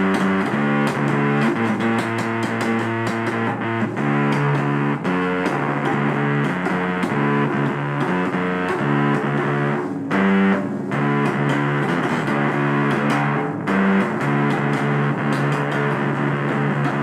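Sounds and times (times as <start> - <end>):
bass line: 0.0 - 17.0
distorted electric guitar: 0.0 - 17.0.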